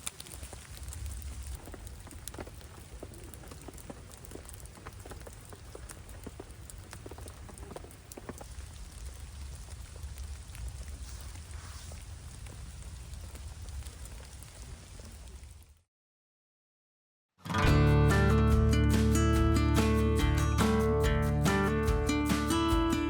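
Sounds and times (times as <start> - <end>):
raindrops ticking on surfaces: 0.0 - 15.8
low rain rumble: 0.0 - 15.9.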